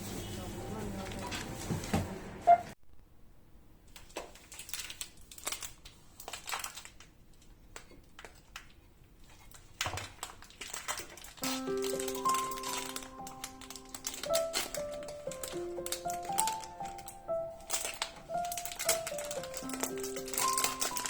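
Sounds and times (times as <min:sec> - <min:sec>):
objects tapping and rustling: 0:00.0 - 0:02.2, 0:09.5 - 0:21.0.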